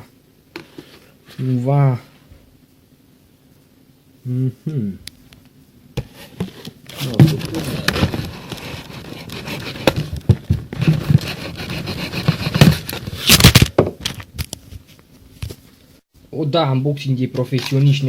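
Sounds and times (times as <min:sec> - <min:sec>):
handling noise on microphone: 0:06.0 - 0:16.0.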